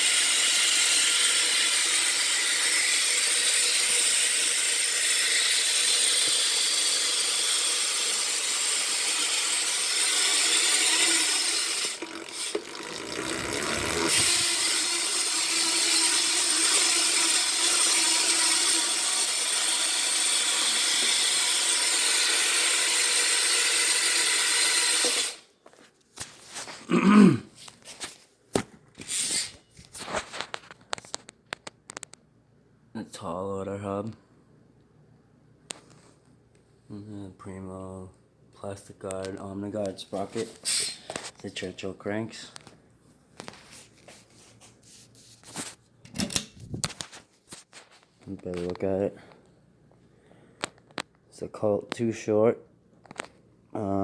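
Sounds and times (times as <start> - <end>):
bicycle hub ratcheting buzz: 0.0 - 25.4.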